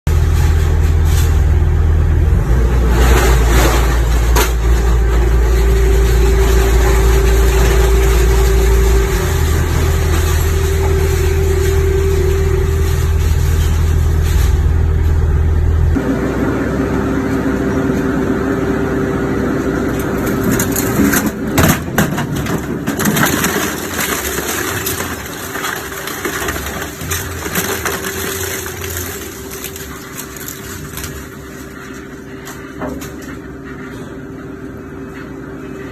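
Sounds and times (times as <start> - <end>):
shredder low hum: 0.1 - 35.9
shredder drive whine: 1.6 - 35.9
metal being torn and crushed: 2.8 - 14.8, 19.9 - 33.4.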